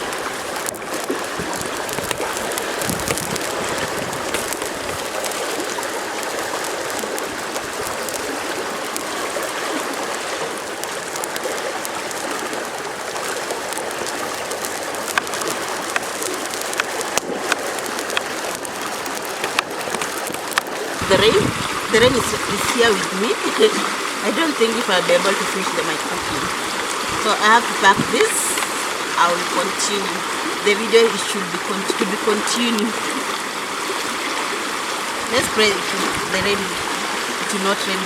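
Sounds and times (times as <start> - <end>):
sharp ticks: 0.0 - 23.7, 26.8 - 33.0
rain falling: 0.0 - 38.0
river flowing: 0.0 - 38.0.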